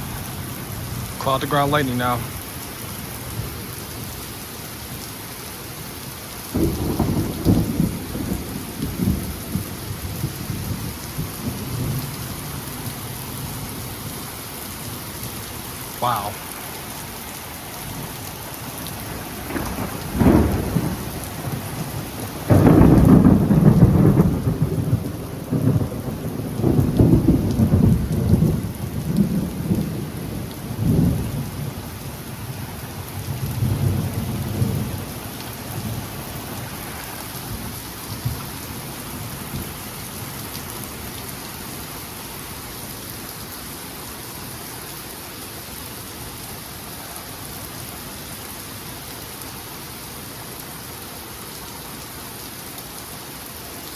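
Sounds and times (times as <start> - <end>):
steady rain: 0.0 - 53.9
thunder crack: 6.6 - 9.3, 19.4 - 29.8
rolling thunder rumble: 6.6 - 12.5, 18.8 - 31.9, 33.1 - 36.8.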